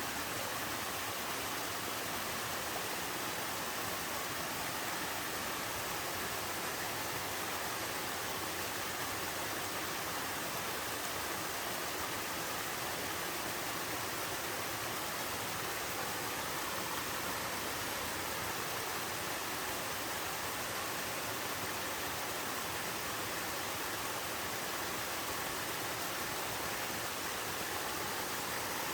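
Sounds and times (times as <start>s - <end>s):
waterfall rushing into pools: 0.0s - 28.9s.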